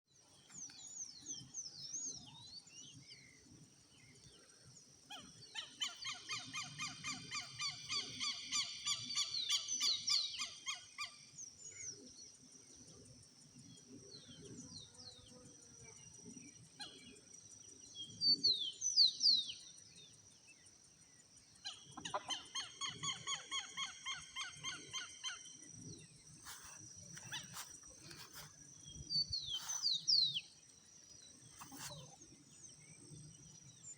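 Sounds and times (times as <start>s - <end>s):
birds chirping and whistling: 26.5s - 30.5s.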